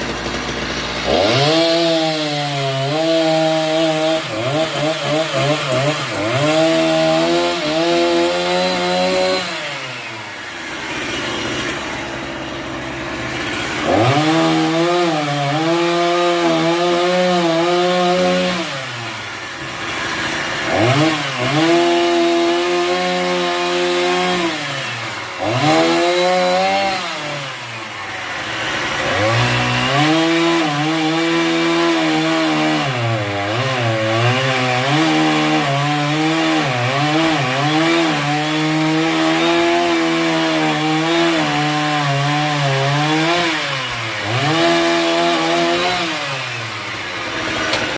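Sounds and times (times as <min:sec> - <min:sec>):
chainsaw cutting a tree: 0:00.0 - 0:47.9.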